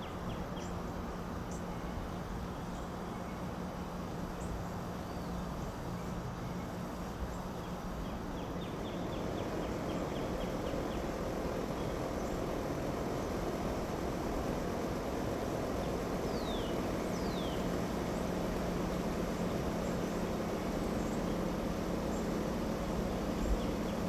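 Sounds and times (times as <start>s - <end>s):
small birds chirping: 7.6s - 24.0s.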